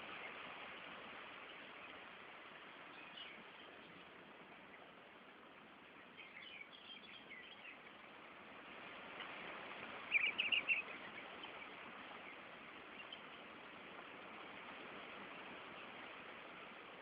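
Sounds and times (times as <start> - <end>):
small birds chirping: 2.8 - 5.0, 5.8 - 8.1, 10.0 - 13.5.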